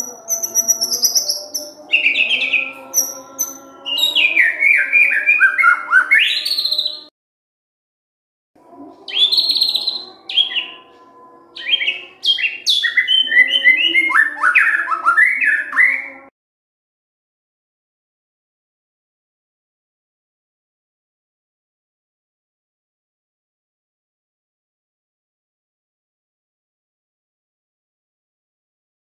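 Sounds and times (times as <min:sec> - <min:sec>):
songbird singing whistles: 0:00.0 - 0:07.1, 0:09.1 - 0:10.9, 0:11.6 - 0:16.2.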